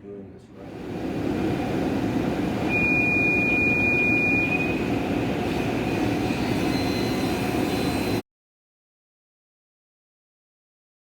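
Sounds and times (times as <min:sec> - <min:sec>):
thin high whine: 0:02.6 - 0:08.2.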